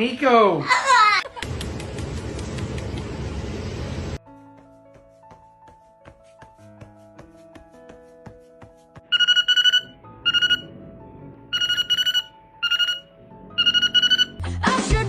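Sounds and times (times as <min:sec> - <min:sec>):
soft background music: 0:04.2 - 0:15.0
trilling electronic telephone ring: 0:09.1 - 0:10.7, 0:11.5 - 0:14.4.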